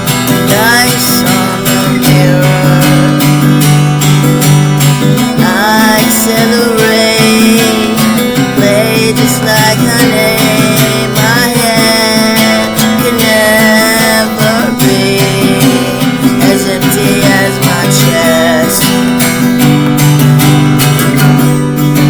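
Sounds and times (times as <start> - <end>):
acoustic guitar playing: 0.0 - 22.0.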